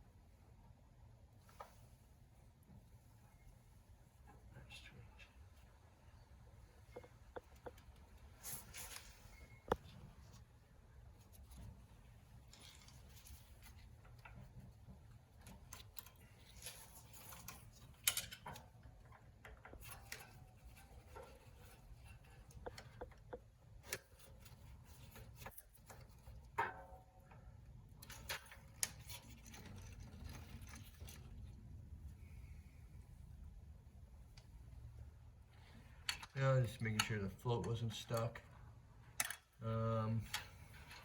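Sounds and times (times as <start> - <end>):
clicks and taps of small parts: 39.2 - 39.5.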